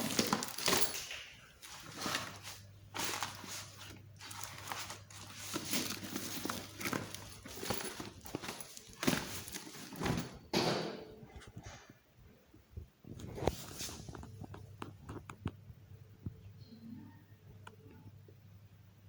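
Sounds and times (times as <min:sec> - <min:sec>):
cat rustling in bag: 0:00.0 - 0:10.5, 0:13.2 - 0:14.5.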